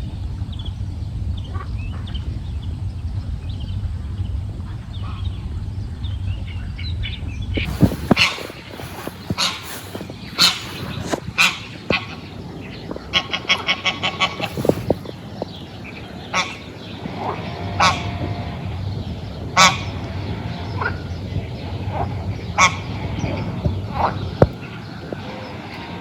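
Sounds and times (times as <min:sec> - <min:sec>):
geese or ducks honking: 0:07.6 - 0:26.0.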